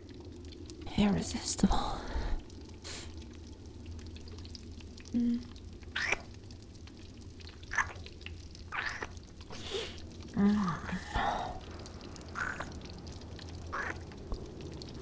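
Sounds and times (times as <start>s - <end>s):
low steady hum: 0.0s - 15.0s
person humming: 5.2s - 6.2s, 9.5s - 11.6s
wet kissing smacks: 6.0s - 6.3s, 7.7s - 8.0s, 8.7s - 10.0s, 13.8s - 14.4s.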